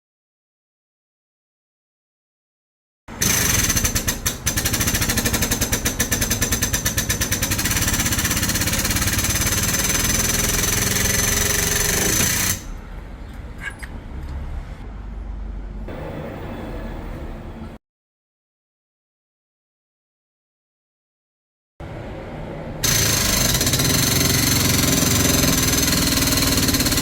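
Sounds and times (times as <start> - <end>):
machine hammering rattle: 3.2 - 12.8, 22.8 - 27.0.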